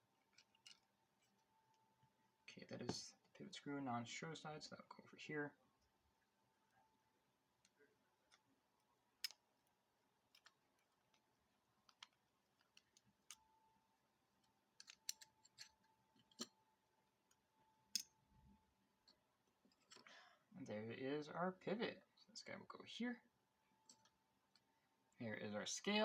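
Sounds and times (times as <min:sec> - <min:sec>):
small metal parts clicking: 0:00.3 - 0:01.4, 0:09.2 - 0:09.5, 0:10.3 - 0:11.2, 0:14.8 - 0:16.6, 0:17.3 - 0:18.2, 0:19.0 - 0:20.2, 0:23.8 - 0:24.7.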